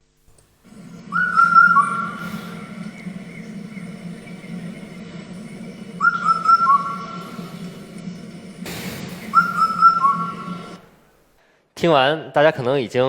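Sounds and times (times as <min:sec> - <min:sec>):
steady low hum: 0:00.0 - 0:11.5
cuckoo whistling four-note phrase: 0:00.9 - 0:04.8, 0:05.4 - 0:07.9, 0:09.2 - 0:10.9.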